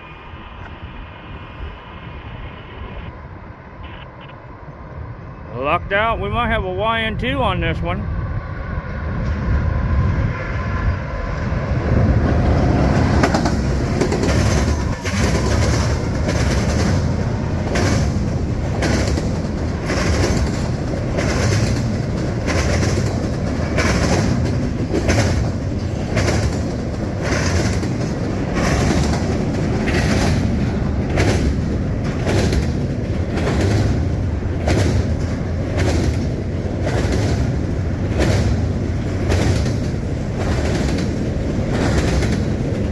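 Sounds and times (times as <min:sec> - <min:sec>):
freight train rumble: 0:00.0 - 0:42.9
train wheels clacking over crossing: 0:12.4 - 0:42.9.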